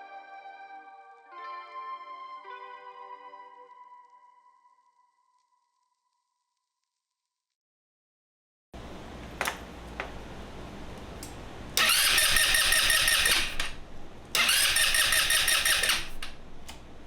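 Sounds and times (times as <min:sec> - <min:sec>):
scooter engine cranking: 0:11.8 - 0:17.0.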